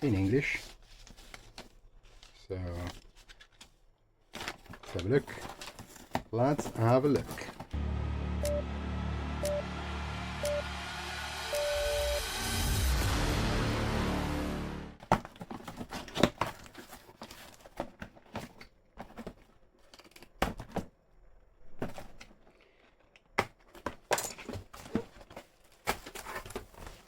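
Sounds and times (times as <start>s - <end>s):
cardboard packaging rustling: 0.1s - 7.7s, 15.0s - 19.9s.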